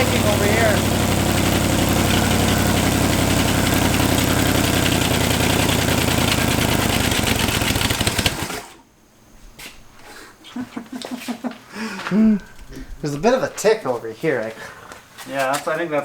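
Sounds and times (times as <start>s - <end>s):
engine idling with ticking: 0.0s - 8.7s.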